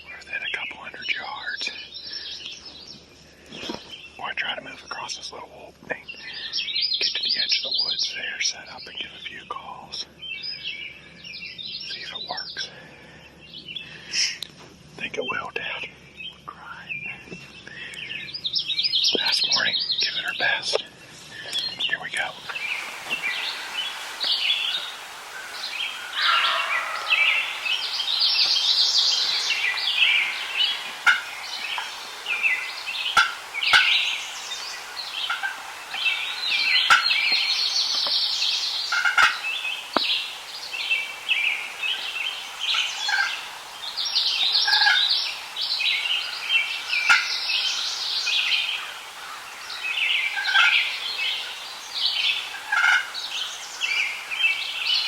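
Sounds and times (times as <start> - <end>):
songbirds dawn chorus: 0.0 - 55.0
turkey gobbling: 22.3 - 38.2, 38.8 - 40.3, 41.9 - 43.6, 44.4 - 45.4, 46.0 - 49.5, 50.3 - 51.6, 52.2 - 54.0.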